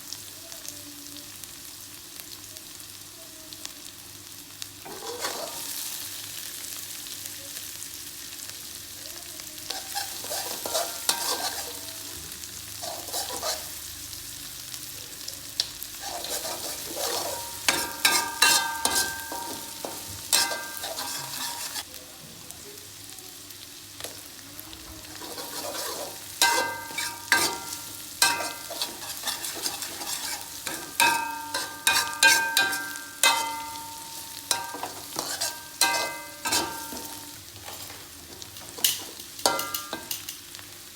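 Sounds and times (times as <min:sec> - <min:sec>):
food sizzling in oil: 0:00.0 - 0:40.9
metal spatula clinking on pan: 0:09.7 - 0:11.8, 0:16.0 - 0:21.8, 0:25.2 - 0:37.9, 0:38.6 - 0:40.4.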